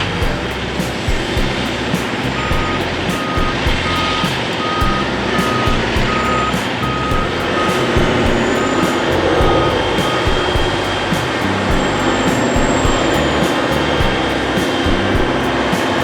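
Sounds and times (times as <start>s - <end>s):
diesel engine running: 0.0s - 16.0s
reversing alarm beeping: 2.4s - 10.6s.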